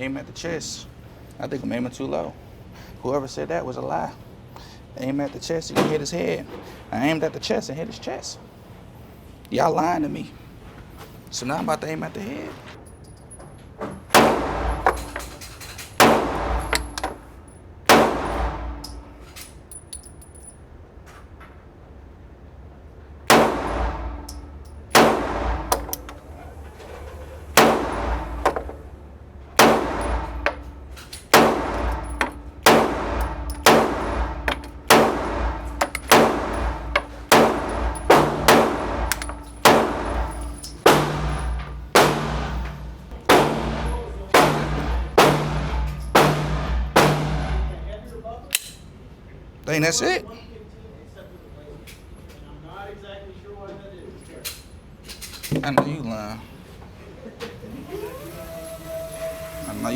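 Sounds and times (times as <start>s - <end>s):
handgun shots: 14.1s - 17.2s, 17.9s - 19.4s, 23.3s - 26.2s, 27.6s - 28.8s, 29.6s - 47.8s.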